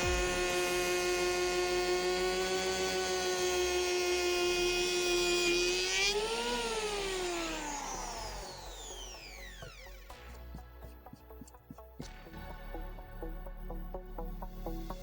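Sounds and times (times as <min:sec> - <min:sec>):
electric planer whining: 0:00.0 - 0:10.2.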